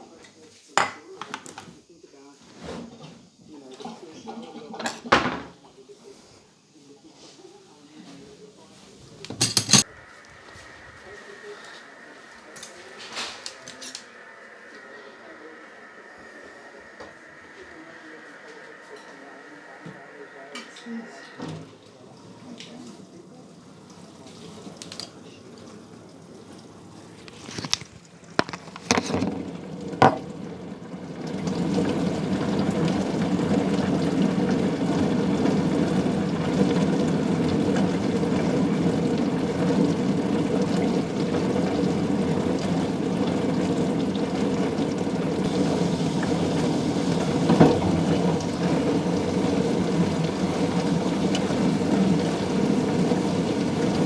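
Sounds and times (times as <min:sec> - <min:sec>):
dishwasher clicks: 0:09.3 - 0:09.9
water sloshing in dishwasher: 0:09.3 - 0:09.9, 0:28.4 - 0:54.0.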